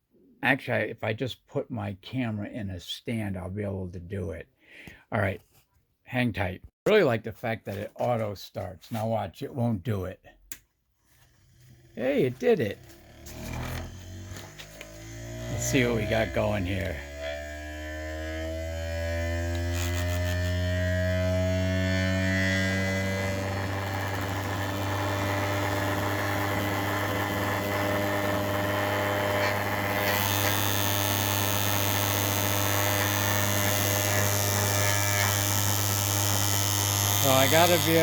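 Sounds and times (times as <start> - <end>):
motor humming: 12.7 - 38.0.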